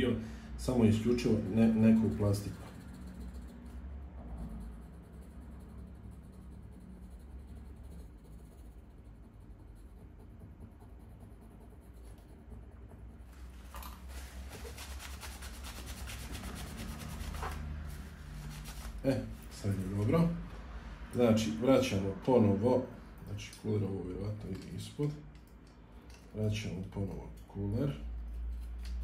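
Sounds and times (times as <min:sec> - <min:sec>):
low hum: 0:00.2 - 0:29.0.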